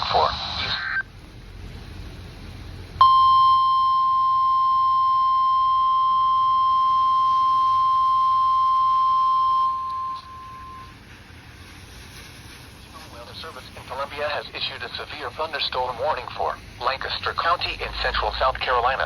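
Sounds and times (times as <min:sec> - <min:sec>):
steady high alarm tone: 0:03.0 - 0:11.0.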